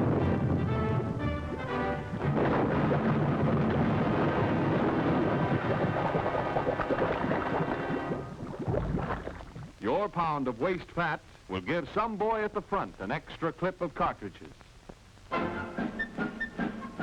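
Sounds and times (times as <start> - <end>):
orchestral cartoon music: 0.0 - 2.9, 15.3 - 17.0.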